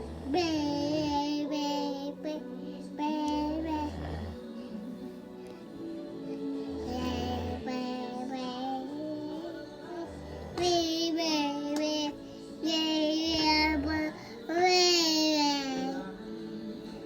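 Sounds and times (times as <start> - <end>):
man snoring: 0.0 - 1.3, 3.4 - 4.6.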